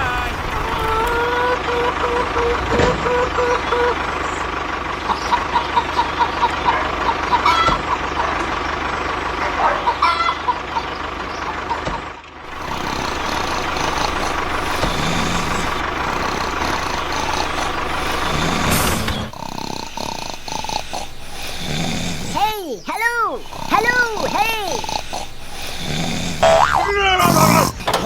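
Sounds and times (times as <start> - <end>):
vehicle engine noise: 0.0 - 28.0
short high blips: 26.4 - 27.2.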